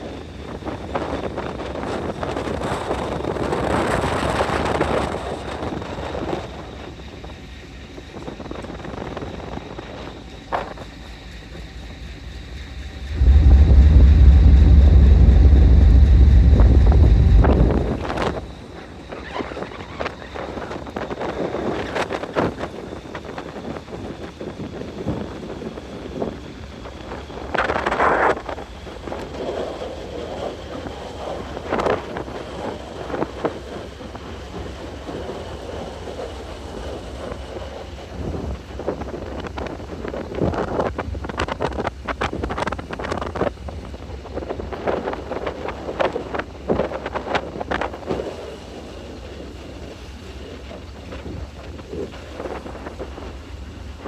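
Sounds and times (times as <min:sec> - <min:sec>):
wind buffeting microphone: 0:08.8 - 0:19.2
low engine rumble: 0:09.9 - 0:19.2.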